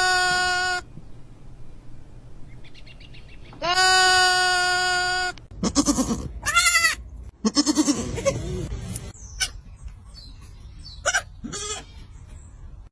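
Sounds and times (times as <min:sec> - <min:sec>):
goat kids bleating: 0:00.0 - 0:00.9, 0:03.6 - 0:08.7, 0:09.4 - 0:09.7, 0:10.9 - 0:12.1.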